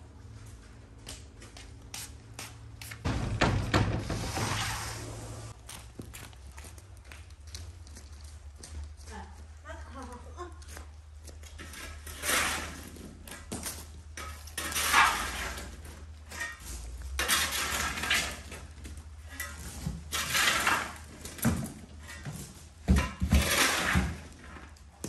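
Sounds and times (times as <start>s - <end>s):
sharp knocks: 3.0s - 4.5s
pots and dishes scraping and clinking: 14.2s - 24.3s.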